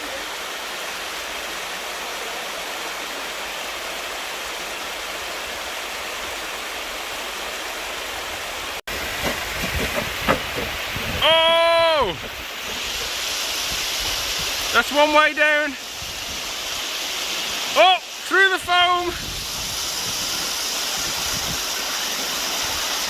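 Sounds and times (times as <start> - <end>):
stream water rushing: 0.0 - 23.0
low rumbling knocks: 8.9 - 11.2.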